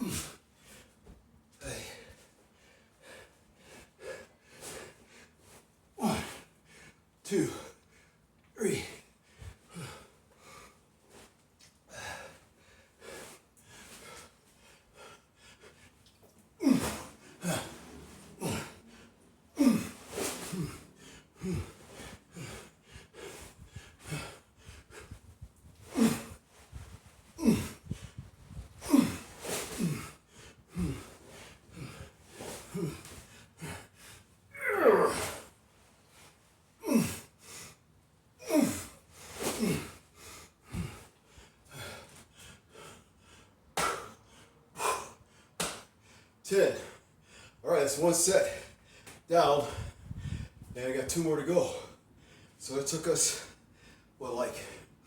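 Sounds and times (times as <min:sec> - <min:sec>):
man grunting: 0:00.0 - 0:00.3, 0:06.0 - 0:06.4, 0:07.3 - 0:07.7, 0:08.6 - 0:09.0, 0:16.6 - 0:17.8, 0:18.4 - 0:18.8, 0:19.6 - 0:20.8, 0:27.4 - 0:27.8, 0:28.8 - 0:29.2, 0:29.8 - 0:30.1, 0:32.7 - 0:33.0, 0:34.6 - 0:35.5, 0:36.8 - 0:37.2, 0:38.4 - 0:38.9
man breathing heavily: 0:00.0 - 0:36.2, 0:38.4 - 0:52.6.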